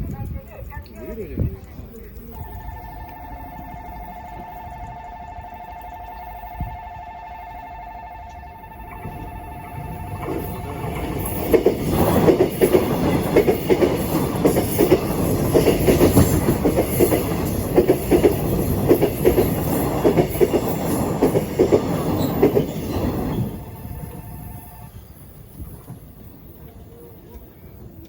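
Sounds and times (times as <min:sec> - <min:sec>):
train wheels clacking over rail joints: 0:09.8 - 0:24.4.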